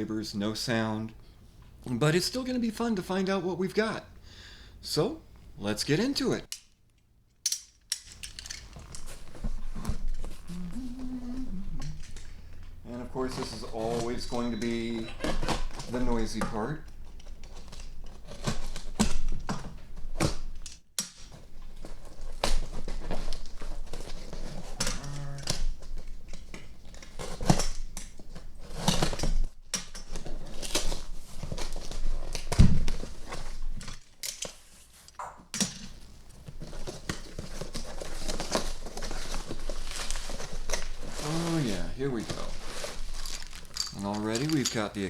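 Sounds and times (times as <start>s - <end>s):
knocks and thunks of box handled: 31.4s - 33.6s
cardboard box crinkling and tearing: 36.6s - 44.4s.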